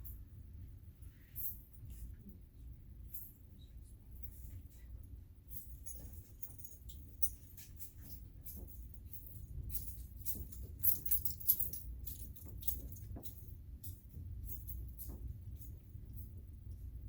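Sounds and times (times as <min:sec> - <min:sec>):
steady low hum: 0:00.0 - 0:17.0
small hard parts clicking: 0:05.5 - 0:16.3.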